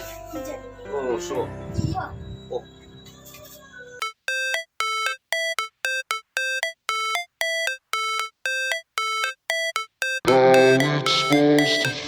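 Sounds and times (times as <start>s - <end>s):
chime-like synth melody: 4.0s - 12.0s
electronic track with bass: 4.0s - 12.0s.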